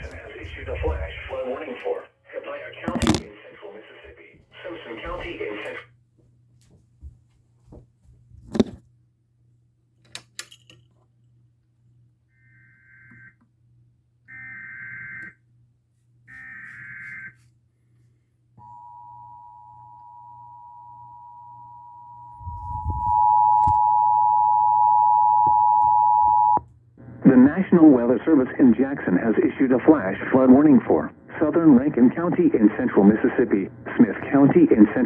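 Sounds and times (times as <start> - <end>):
two-tone attention signal: 18.6 - 26.6
low hum: 18.6 - 35.0
warbling data tone bursts: 20.7 - 26.6.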